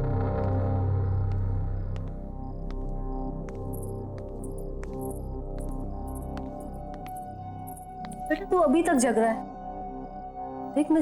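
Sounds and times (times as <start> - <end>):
ambient drone music: 0.0 - 10.9.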